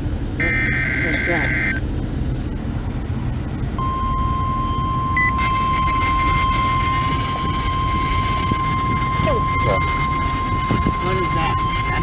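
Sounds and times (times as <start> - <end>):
car road rumble: 0.0 - 12.0
steady warning alarm tone: 0.4 - 1.8, 3.8 - 12.0
short higher beep: 3.8 - 12.0.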